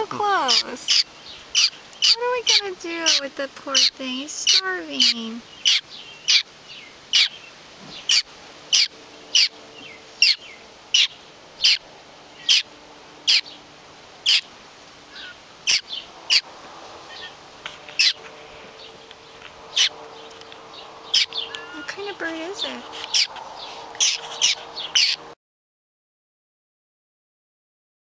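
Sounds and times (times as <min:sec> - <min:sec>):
baby bird begging calls: 0:00.0 - 0:06.5, 0:07.1 - 0:13.6, 0:14.2 - 0:14.5, 0:15.1 - 0:18.4, 0:19.3 - 0:23.4, 0:24.0 - 0:25.2.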